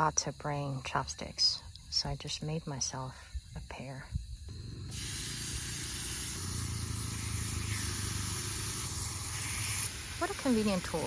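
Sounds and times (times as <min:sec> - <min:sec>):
gas stove burner hissing: 0:04.5 - 0:11.0.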